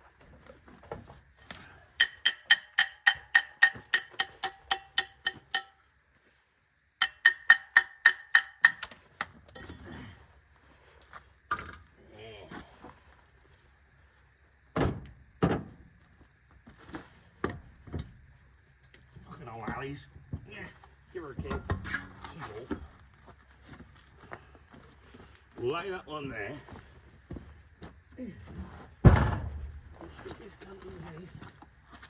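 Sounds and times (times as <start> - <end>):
ratchet wrench clicking: 2.0 - 5.7, 7.0 - 9.4
heavy thumps: 29.0 - 30.2.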